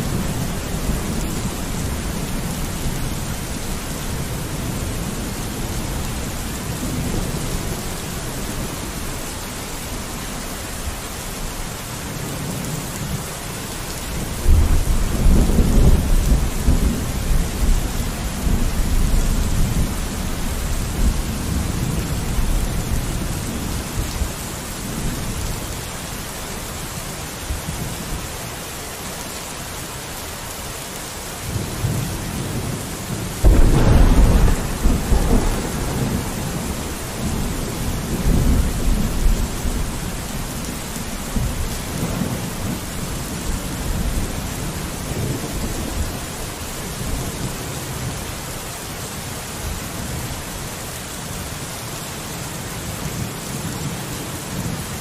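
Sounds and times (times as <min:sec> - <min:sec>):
rain on a window pane: 0:00.0 - 0:55.0
low rolling thunder: 0:14.2 - 0:25.6, 0:31.5 - 0:48.2
loud thunderclap: 0:33.4 - 0:39.9.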